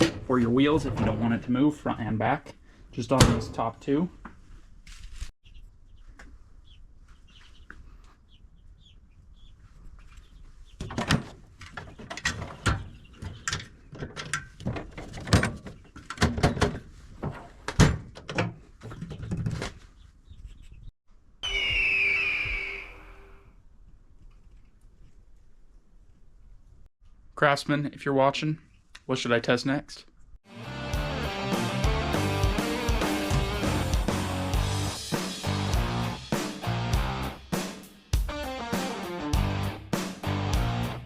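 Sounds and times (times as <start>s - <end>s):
tool chest drawers clunking: 0.0s - 1.4s
brief high tone: 21.4s - 23.5s.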